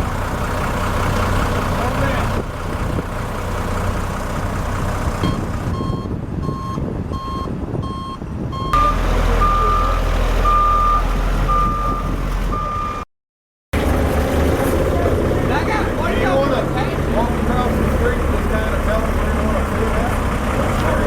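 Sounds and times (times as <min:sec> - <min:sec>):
low engine rumble: 0:00.0 - 0:13.1, 0:13.8 - 0:21.0
backup alarm beeping: 0:05.2 - 0:13.0
higher backup beeper: 0:05.2 - 0:13.1.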